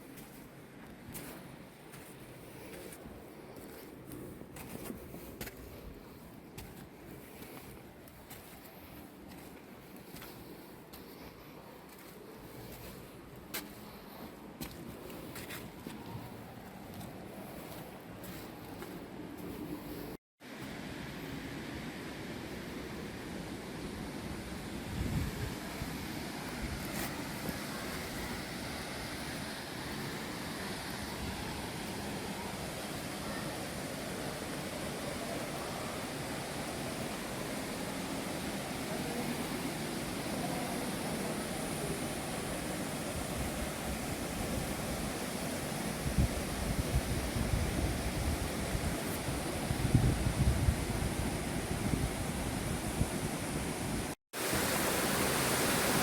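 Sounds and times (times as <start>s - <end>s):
water rushing in creek: 20.4s - 56.0s
wind rumbling on microphone: 23.8s - 29.1s, 36.8s - 54.2s.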